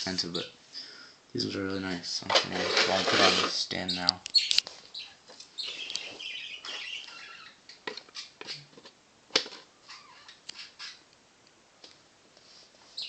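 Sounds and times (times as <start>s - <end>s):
plastic scraping and rustling: 2.2s - 3.8s.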